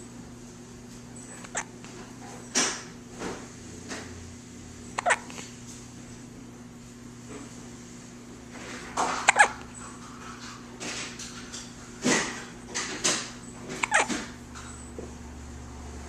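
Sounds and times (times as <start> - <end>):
person hiccupping: 1.4 - 1.8, 5.0 - 5.5, 9.3 - 9.6, 13.8 - 14.2.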